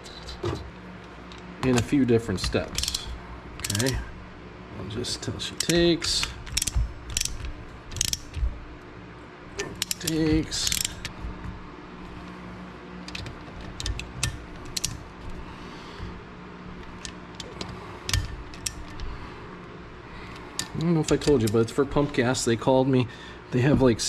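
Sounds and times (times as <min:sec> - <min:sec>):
ratchet wrench clicking: 0:02.7 - 0:04.0, 0:05.6 - 0:08.5, 0:09.8 - 0:11.2, 0:13.1 - 0:15.0, 0:16.8 - 0:19.1.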